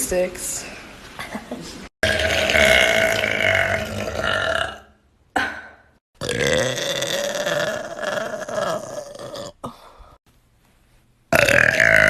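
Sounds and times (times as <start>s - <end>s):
girl burping loudly: 2.0s - 5.6s, 6.2s - 9.8s, 11.3s - 12.0s.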